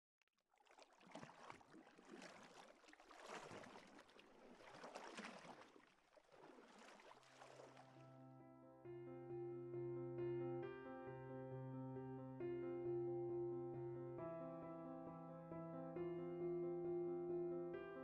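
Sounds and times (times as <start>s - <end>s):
soft keyboard music: 8.0s - 18.0s.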